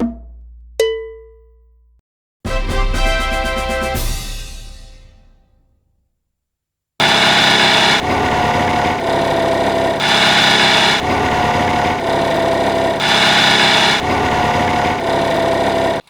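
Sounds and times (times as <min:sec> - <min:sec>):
scooter engine idling: 0:07.0 - 0:16.0.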